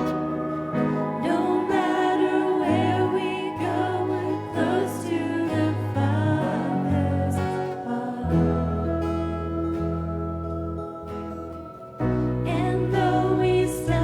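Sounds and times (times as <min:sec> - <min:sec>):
person singing: 0:00.0 - 0:09.7, 0:12.0 - 0:14.0
held bass notes: 0:08.2 - 0:14.0.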